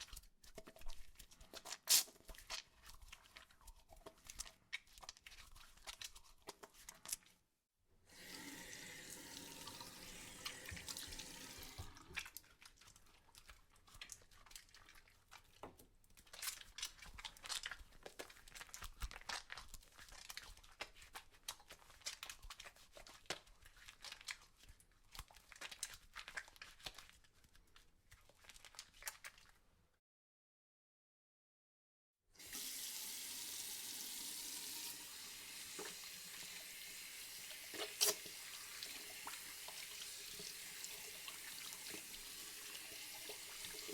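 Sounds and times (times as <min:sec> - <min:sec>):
soapy hands rubbing: 0:00.0 - 0:07.5, 0:08.2 - 0:29.7, 0:34.8 - 0:43.9
tap water running: 0:08.1 - 0:12.4, 0:32.4 - 0:43.9.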